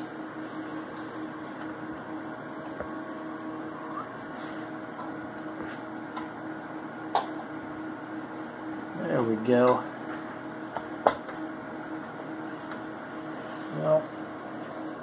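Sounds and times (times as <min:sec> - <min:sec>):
low hum: 0:00.0 - 0:09.1.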